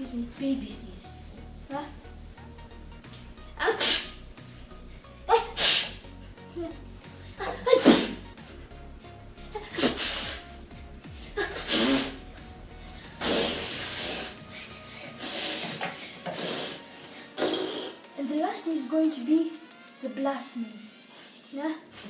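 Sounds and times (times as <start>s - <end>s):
background music: 0.0s - 22.0s
person sneezing: 3.6s - 4.2s, 5.3s - 6.0s, 7.4s - 8.2s, 9.6s - 10.4s, 11.2s - 12.2s, 13.2s - 18.0s.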